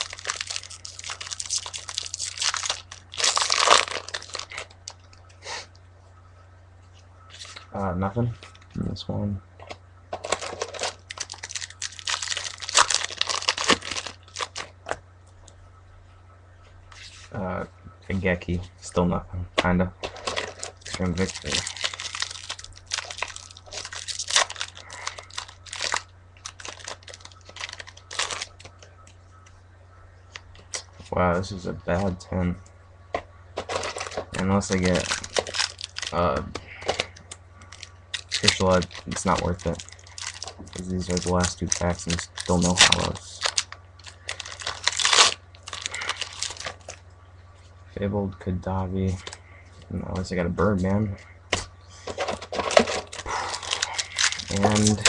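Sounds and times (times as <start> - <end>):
foil wrapper crinkling: 0.0 - 5.3, 9.6 - 15.0, 20.0 - 29.2, 30.3 - 31.1, 33.6 - 47.7, 49.2 - 49.4, 52.0 - 55.0
cards shuffling: 51.5 - 55.0.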